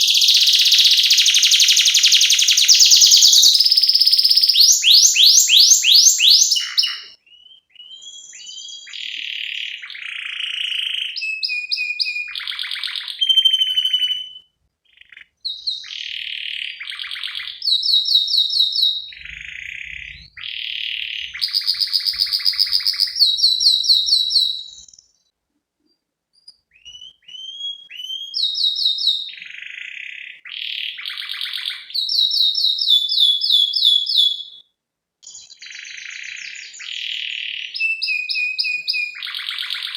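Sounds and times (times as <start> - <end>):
canary singing: 0.0 - 25.3, 26.4 - 34.6, 35.2 - 39.9.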